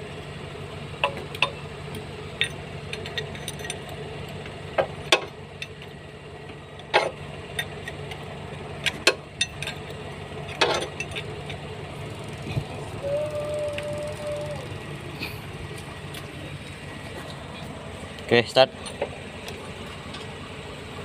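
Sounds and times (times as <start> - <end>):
low mechanical hum: 0.0 - 21.0
metallic clinks and knocks: 2.4 - 4.0, 8.8 - 11.6.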